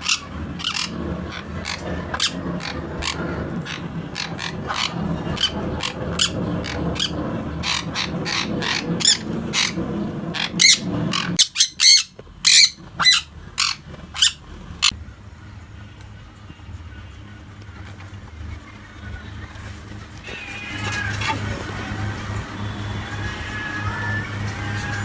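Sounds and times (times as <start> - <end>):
parrot chirps and squawks: 0.0 - 14.4
low background hum: 0.0 - 25.0.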